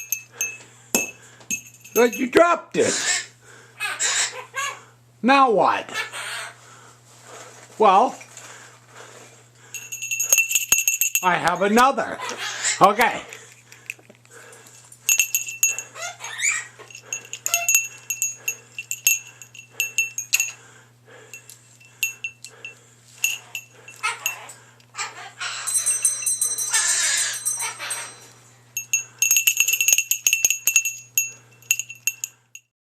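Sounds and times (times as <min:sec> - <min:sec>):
small bell jingling: 0:00.0 - 0:02.4, 0:09.7 - 0:11.8, 0:15.0 - 0:20.6, 0:21.2 - 0:24.6, 0:25.5 - 0:32.7.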